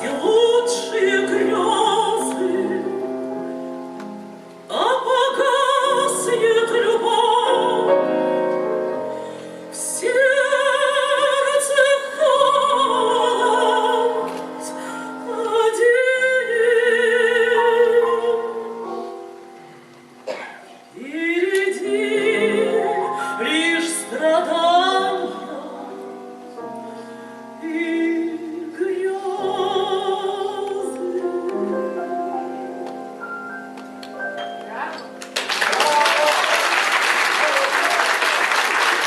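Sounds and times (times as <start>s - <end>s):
woman singing operatically: 0.0s - 3.0s, 4.7s - 8.0s, 9.7s - 18.8s, 21.0s - 26.0s, 27.6s - 32.0s
piano accompaniment: 0.0s - 36.2s.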